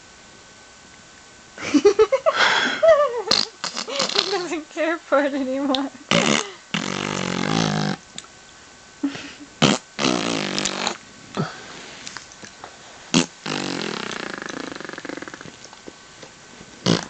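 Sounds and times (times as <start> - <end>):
person imitating farts: 3.3 - 4.6, 6.1 - 8.0, 9.6 - 12.3, 13.1 - 15.7.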